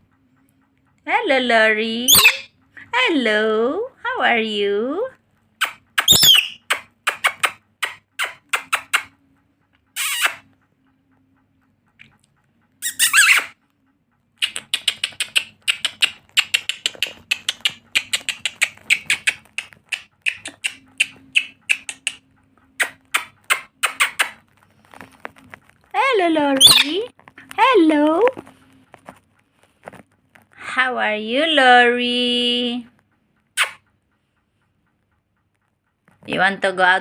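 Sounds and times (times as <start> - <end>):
parrot chirping: 2.0 - 2.6, 5.6 - 9.1, 10.0 - 10.5, 12.8 - 13.6, 14.4 - 22.2, 22.8 - 24.4, 26.6 - 27.1, 33.6 - 33.8
parrot squawking: 2.1 - 2.5, 5.6 - 9.1, 10.0 - 10.4, 12.8 - 13.6, 26.6 - 27.0, 33.6 - 33.8.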